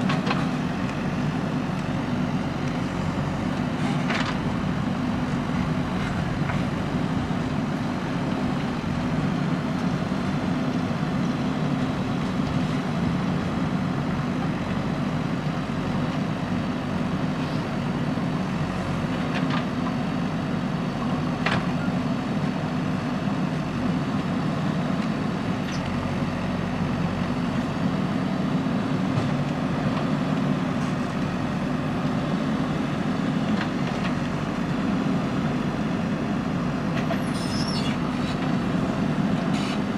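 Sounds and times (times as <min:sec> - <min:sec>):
diesel engine running under load: 0:00.0 - 0:39.9.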